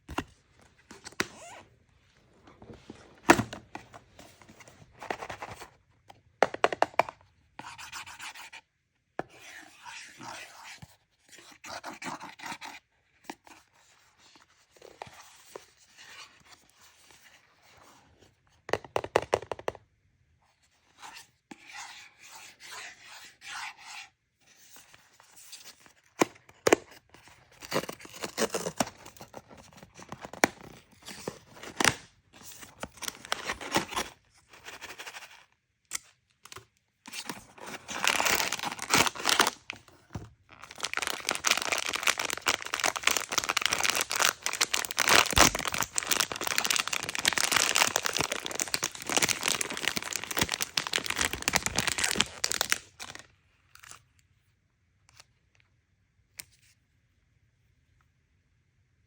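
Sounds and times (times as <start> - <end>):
packaging tearing and crinkling: 37.6 - 39.8, 40.5 - 53.2.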